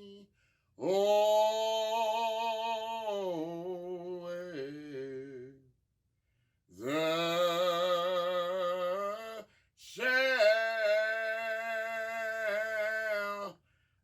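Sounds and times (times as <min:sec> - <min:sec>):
man singing a hymn unaccompanied: 0:00.0 - 0:05.7, 0:06.8 - 0:13.6
singer breathing: 0:00.3 - 0:00.8, 0:13.6 - 0:14.0.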